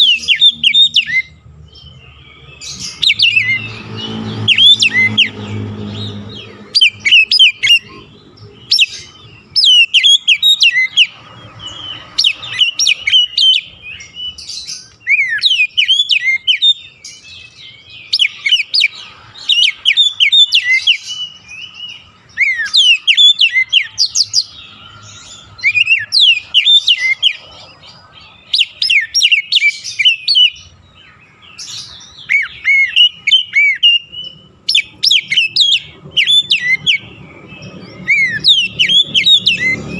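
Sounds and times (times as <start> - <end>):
magpie-robin singing: 0.0 - 39.9.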